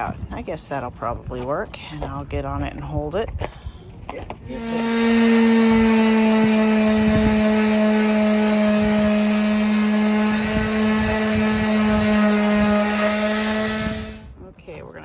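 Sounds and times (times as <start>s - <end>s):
electric power saw whining: 4.5s - 14.3s.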